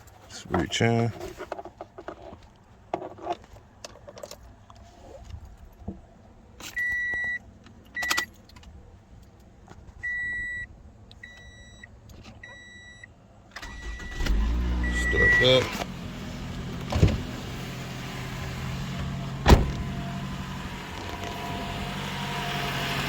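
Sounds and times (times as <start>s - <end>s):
dashboard warning chime beeps: 6.8s - 7.4s, 10.0s - 13.1s, 13.7s - 15.8s
car engine cranking and starting: 13.5s - 23.0s.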